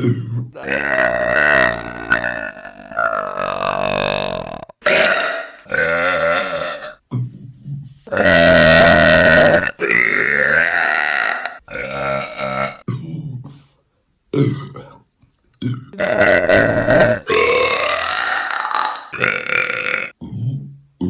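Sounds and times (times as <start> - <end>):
women burping: 0.0 - 7.0, 15.6 - 20.2.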